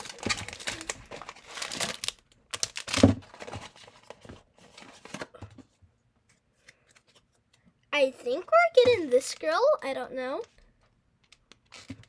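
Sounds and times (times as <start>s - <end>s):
packaging rustling and tearing: 0.0s - 5.3s, 11.3s - 12.0s.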